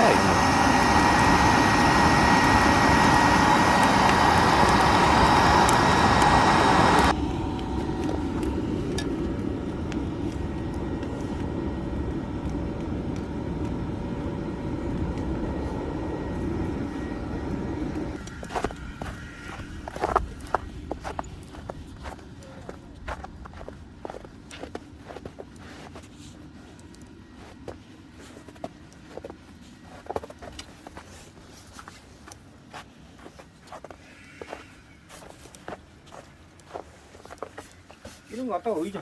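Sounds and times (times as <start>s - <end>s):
electric blower whining: 0.0s - 20.6s
fire crackling: 0.0s - 22.0s
low steady rumble: 0.0s - 25.0s.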